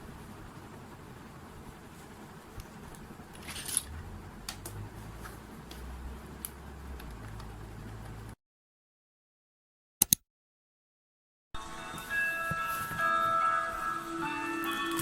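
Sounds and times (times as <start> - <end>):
low steady hum: 0.0 - 8.4
handling scrape or rustle: 3.4 - 3.9.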